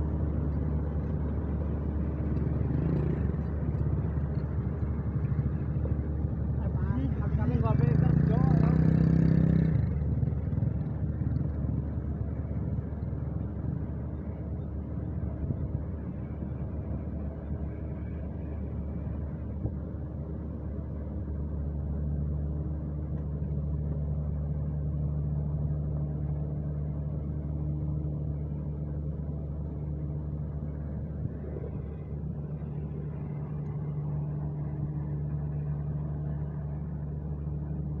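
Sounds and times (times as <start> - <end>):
diesel engine running: 0.0 - 38.0
steady low hum: 9.6 - 38.0.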